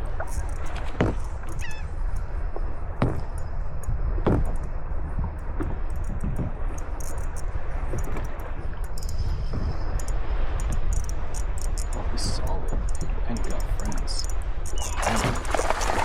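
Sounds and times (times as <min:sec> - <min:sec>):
wind rumble on microphone: 0:00.0 - 0:16.0
harsh bird calls: 0:14.7 - 0:15.2.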